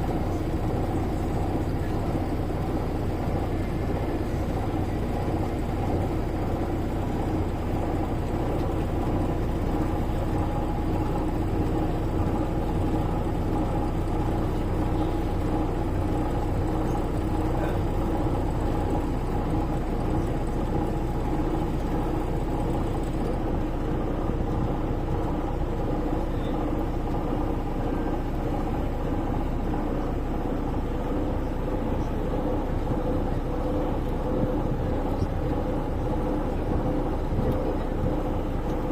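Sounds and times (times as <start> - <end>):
moving vehicle rumble: 0.0 - 38.9.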